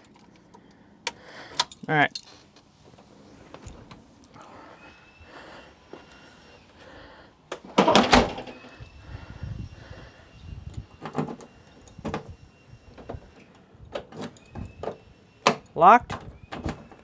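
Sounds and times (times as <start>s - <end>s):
door lock clicks: 7.5s - 8.8s
car door shutting: 7.5s - 8.9s.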